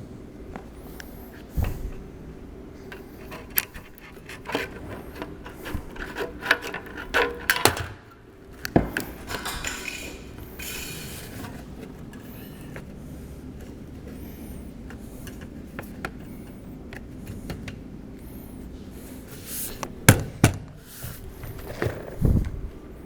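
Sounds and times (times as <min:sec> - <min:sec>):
metal roofing knocks and scraping: 0:02.8 - 0:08.2.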